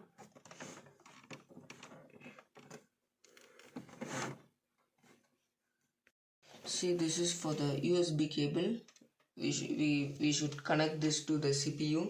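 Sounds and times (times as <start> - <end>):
plastic clicks and rustles: 0.0 - 4.0
bump or scrape: 3.7 - 4.5.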